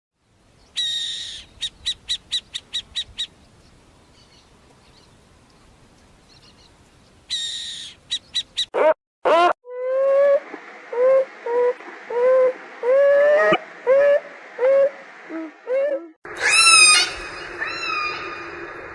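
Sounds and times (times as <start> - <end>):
high-pitched animal calls: 7.3 - 18.8.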